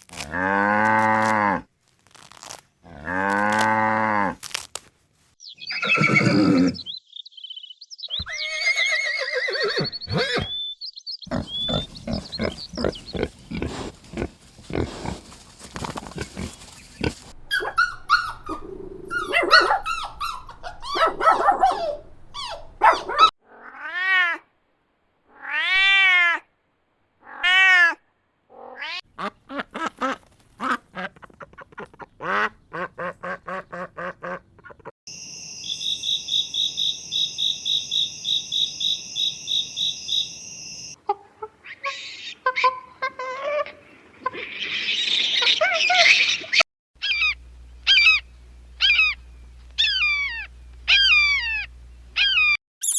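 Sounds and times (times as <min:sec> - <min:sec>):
drawn-out rising and falling calls: 0:11.3 - 0:21.0
animal calls: 0:11.3 - 0:24.1, 0:41.4 - 0:48.2, 0:48.8 - 0:49.2, 0:49.8 - 0:52.6.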